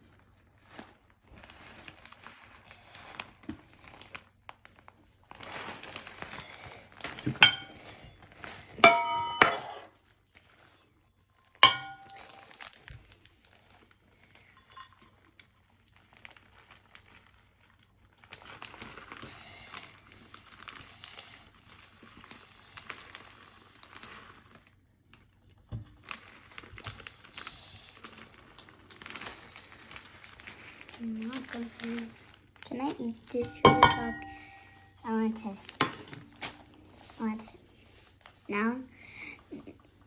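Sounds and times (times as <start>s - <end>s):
soft rustling and scraping: 0.0s - 8.9s, 9.6s - 40.0s
kitchenware clinking on a bowl: 7.3s - 8.1s, 8.8s - 9.9s, 11.6s - 12.6s, 14.6s - 15.2s, 33.4s - 35.0s, 35.8s - 36.3s.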